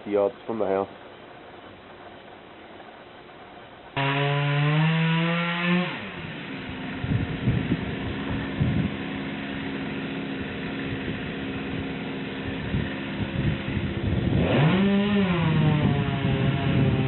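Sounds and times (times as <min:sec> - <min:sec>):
chainsaw engine revving: 0:04.0 - 0:17.0.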